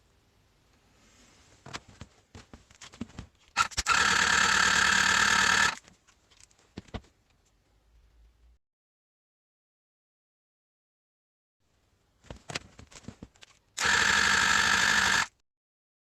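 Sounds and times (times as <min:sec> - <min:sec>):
engine cranked by electric starter: 0:03.6 - 0:05.8, 0:13.8 - 0:15.3.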